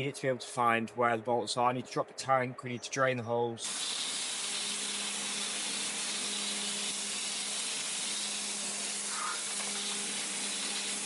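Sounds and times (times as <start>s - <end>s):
pressure washer water jet hiss: 3.6s - 11.0s
pump motor hum: 3.6s - 11.0s.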